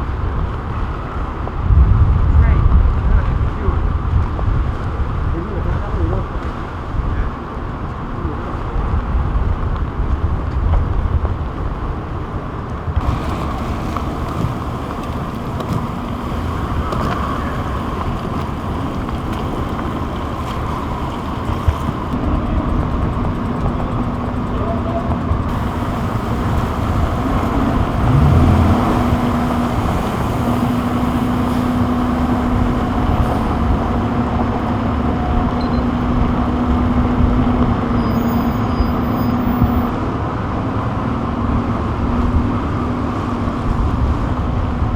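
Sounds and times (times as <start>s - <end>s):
low engine hum: 0.0s - 44.9s
street traffic rumble: 0.0s - 44.9s.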